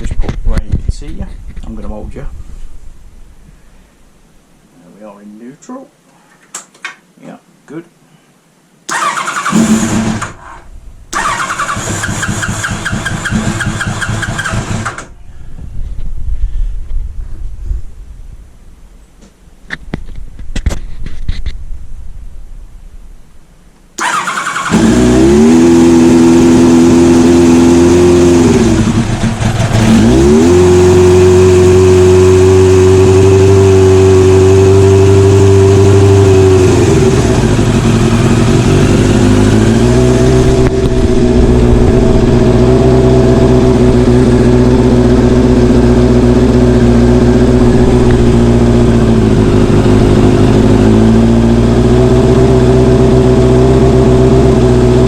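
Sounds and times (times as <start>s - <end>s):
motorcycle engine starting: 8.9s - 15.2s, 24.0s - 55.0s
motorcycle engine idling: 28.6s - 30.0s, 36.6s - 55.0s.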